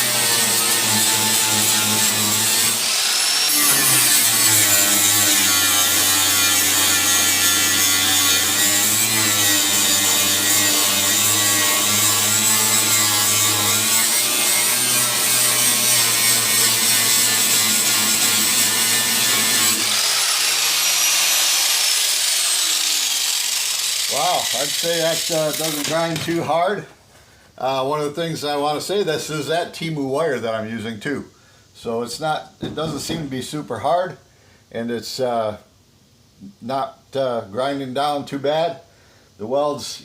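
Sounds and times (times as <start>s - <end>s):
angle grinder grinding metal: 0.0s - 26.5s.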